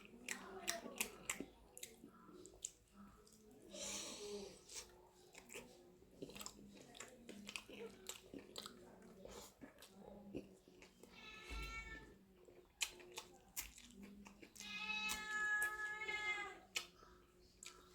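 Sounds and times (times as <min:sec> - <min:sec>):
person chewing food: 0:00.0 - 0:03.7, 0:04.6 - 0:11.1, 0:12.3 - 0:17.9
wet mouth clicks and smacks: 0:16.7 - 0:17.0.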